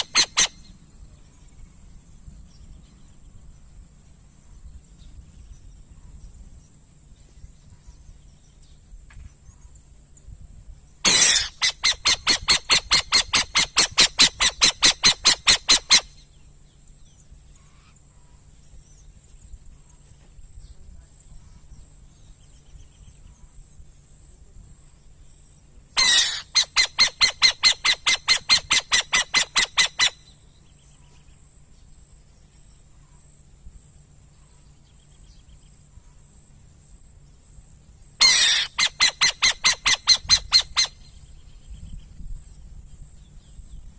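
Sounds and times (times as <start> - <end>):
owl calling in whistled notes: 0.0 - 0.8, 11.1 - 16.2, 26.0 - 30.4, 38.2 - 41.2.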